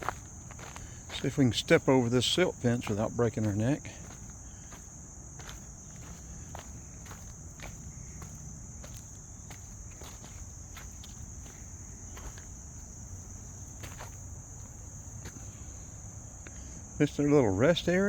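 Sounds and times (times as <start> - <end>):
footsteps walking: 0.0 - 15.6
crickets chirping: 0.0 - 18.0.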